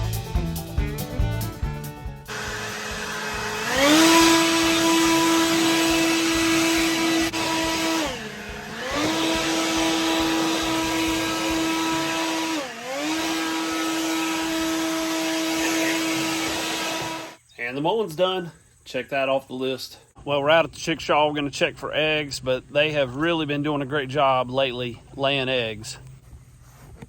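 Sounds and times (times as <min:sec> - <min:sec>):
riding lawn mower engine: 0:02.3 - 0:17.4.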